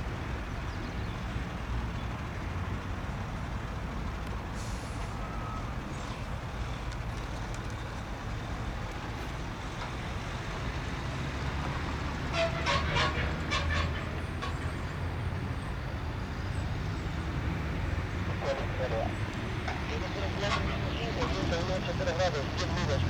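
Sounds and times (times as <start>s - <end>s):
jet engines rumbling: 12.5s - 23.0s.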